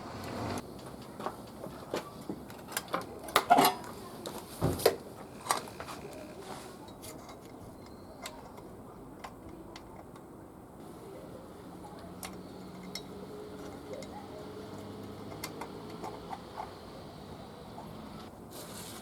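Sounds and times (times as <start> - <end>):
metal tools clinking: 12.0 - 18.2.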